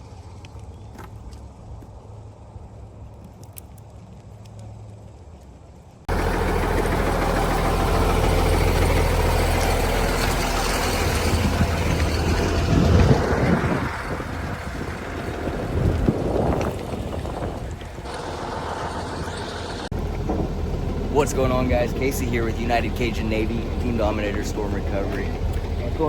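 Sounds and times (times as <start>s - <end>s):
low hum: 3.9s - 26.0s
heavy vehicle engine running: 6.1s - 26.0s.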